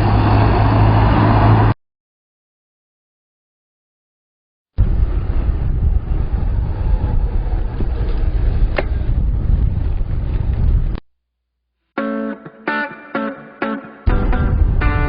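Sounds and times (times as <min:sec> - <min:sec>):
bicycle road noise: 0:00.0 - 0:01.8, 0:04.8 - 0:11.0
wind rumbling on microphone: 0:04.8 - 0:11.0, 0:14.1 - 0:15.0.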